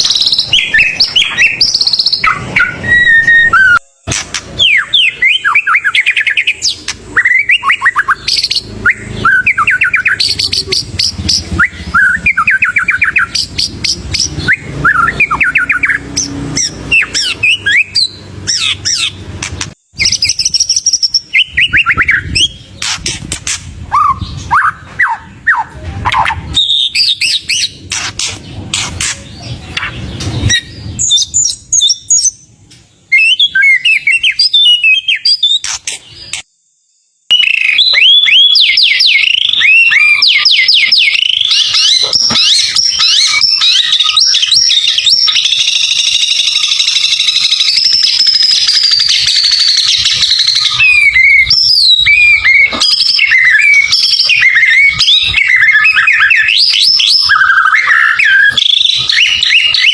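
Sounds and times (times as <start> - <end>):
bird singing whistled phrases: 0.0 - 4.0, 4.6 - 19.1, 33.1 - 36.5, 37.3 - 59.9.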